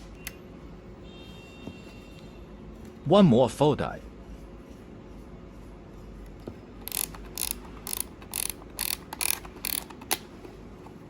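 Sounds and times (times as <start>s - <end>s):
camera thumbwheel ratcheting: 6.8s - 10.3s.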